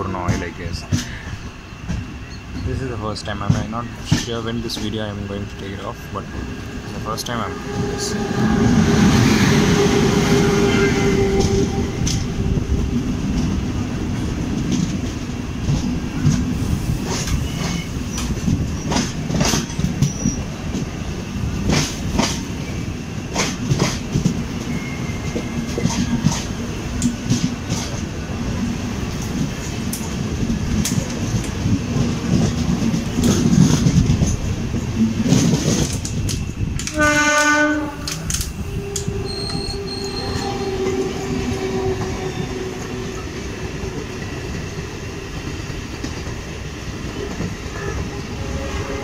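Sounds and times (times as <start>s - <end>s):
train rumbling on track: 0.0s - 49.0s
wheels clicking over rail joints: 11.2s - 21.0s, 21.6s - 22.7s, 23.3s - 28.2s, 29.0s - 42.3s
wheel squeals: 17.2s - 19.0s, 20.0s - 20.5s, 24.6s - 26.3s, 38.8s - 42.6s.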